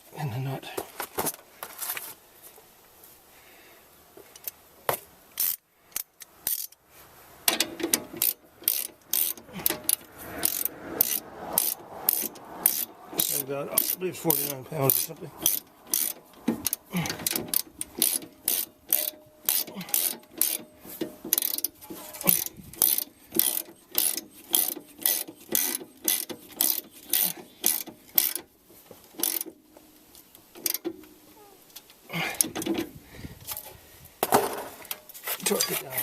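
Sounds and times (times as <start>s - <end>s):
rough handling noise: 0.7s - 3.2s, 4.1s - 36.0s
ratchet wrench clicking: 5.4s - 6.8s, 7.4s - 28.5s, 29.1s - 29.6s, 30.6s - 31.0s.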